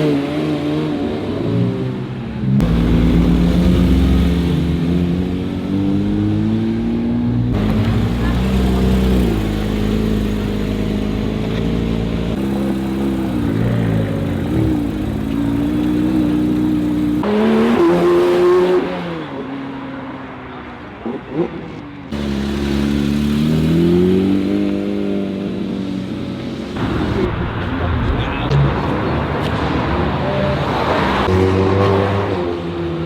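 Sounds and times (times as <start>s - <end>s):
sports car engines revving: 0.0s - 19.9s, 20.8s - 33.0s.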